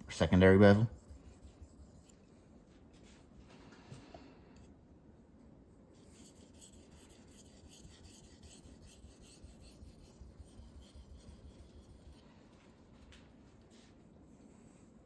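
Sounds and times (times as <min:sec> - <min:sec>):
knife scraping on whetstone: 0:00.0 - 0:02.2, 0:06.1 - 0:12.2.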